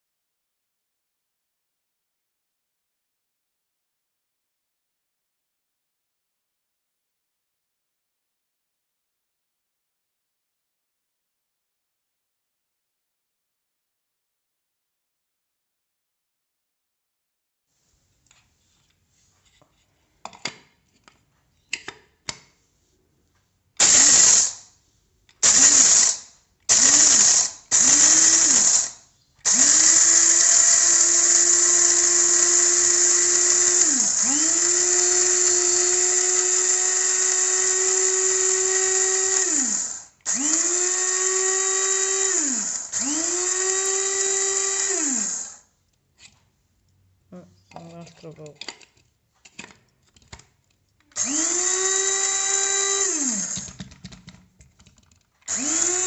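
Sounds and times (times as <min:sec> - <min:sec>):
coffee grinder motor whining: 0:23.8 - 0:24.7, 0:25.4 - 0:45.7, 0:51.1 - 0:54.3, 0:55.5 - 0:56.0.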